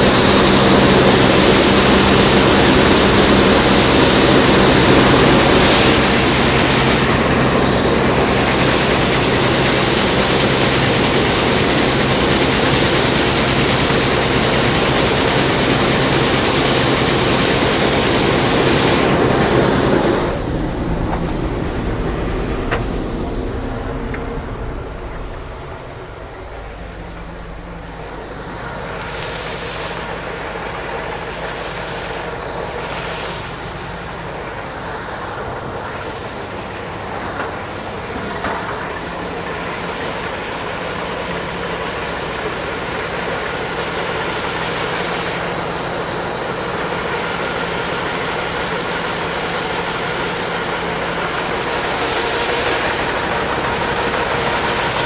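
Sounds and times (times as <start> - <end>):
combine harvester engine hum: 0.0 - 55.0
high hiss: 0.0 - 55.0.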